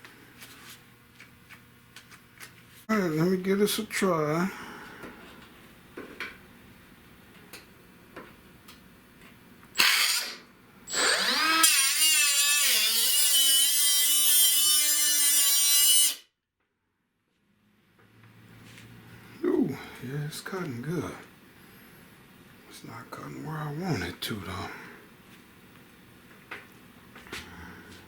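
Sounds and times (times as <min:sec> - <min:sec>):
power tool cutting sheet steel: 0:09.8 - 0:16.3.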